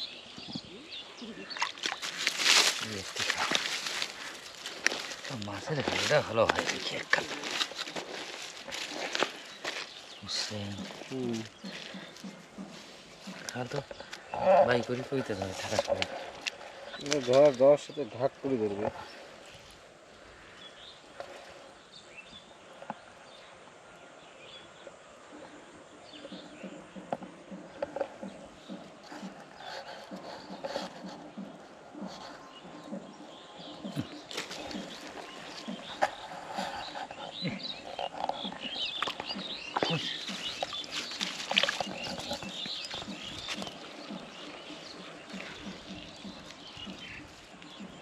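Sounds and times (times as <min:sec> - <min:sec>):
low repeating animal call: 0:07.0 - 0:17.0.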